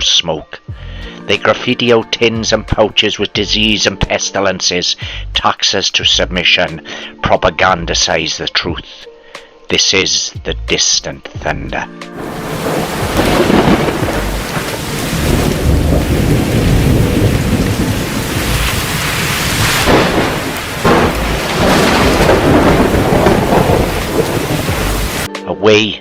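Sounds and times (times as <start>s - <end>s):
heavy rain: 12.2s - 25.3s
rolling thunder: 12.2s - 25.3s.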